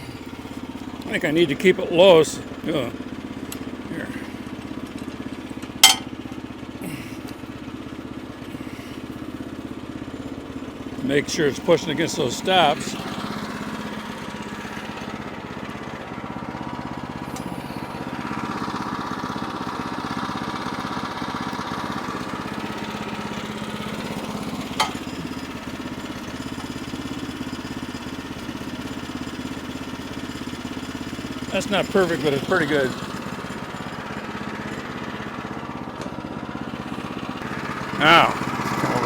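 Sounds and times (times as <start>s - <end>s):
bandsaw mill engine running: 0.0s - 39.0s
saw cutting log: 30.2s - 35.5s.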